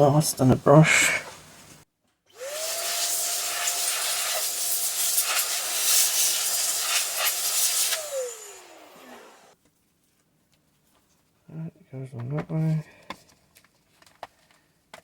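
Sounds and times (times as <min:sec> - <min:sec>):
electric air duster blowing: 0:02.4 - 0:09.6.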